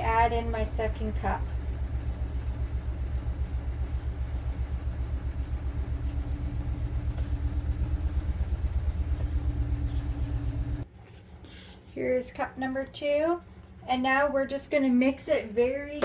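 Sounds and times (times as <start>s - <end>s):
motor running with fast throb: 0.0s - 10.8s
faint hum: 0.0s - 10.9s.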